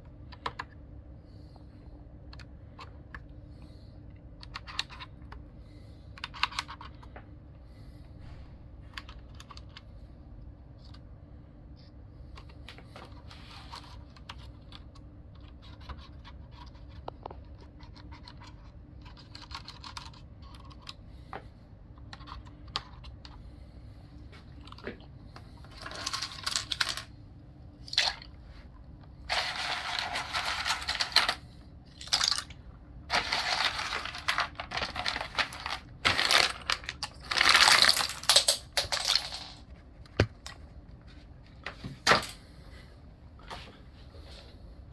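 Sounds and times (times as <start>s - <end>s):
plastic keyboard parts rattling: 4.4s - 5.4s, 6.2s - 7.2s, 9.0s - 9.8s, 12.9s - 21.0s, 25.6s - 27.1s, 29.2s - 40.6s, 41.7s - 42.4s.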